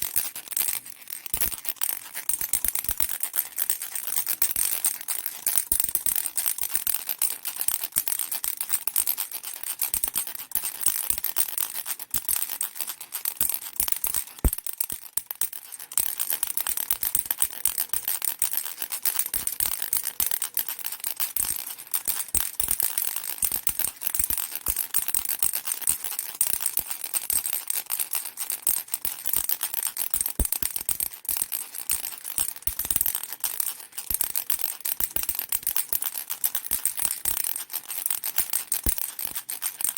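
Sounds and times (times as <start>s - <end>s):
baby rattle shaken: 28.6s - 39.9s.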